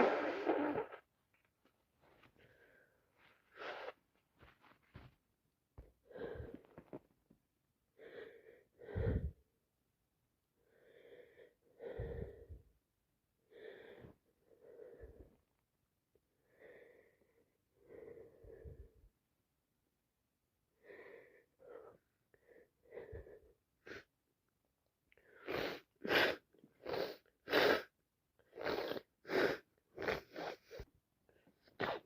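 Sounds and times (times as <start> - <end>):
person sneezing: 0.0 - 1.0
wheezy breaths: 2.2 - 4.1, 8.0 - 9.4, 10.7 - 12.7, 20.8 - 24.1.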